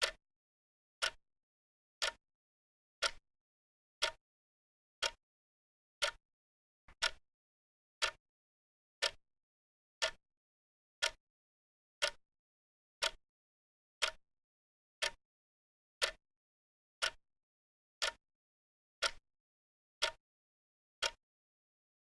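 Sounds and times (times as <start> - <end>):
clock ticking: 2.0 - 2.2, 4.0 - 4.2, 6.0 - 6.2, 8.0 - 8.2, 10.0 - 10.2, 13.0 - 13.2, 14.0 - 14.2, 16.0 - 16.2, 18.0 - 18.2, 20.0 - 20.2.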